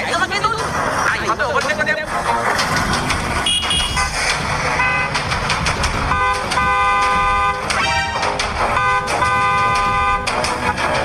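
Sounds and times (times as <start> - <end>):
traffic rumble: 0.0 - 11.0
car horn blasts: 3.4 - 4.1, 6.1 - 10.4.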